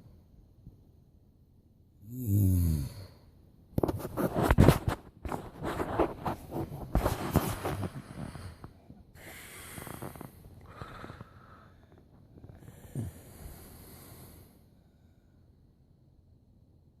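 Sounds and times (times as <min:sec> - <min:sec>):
woman snoring: 0:02.0 - 0:03.2, 0:09.2 - 0:14.4.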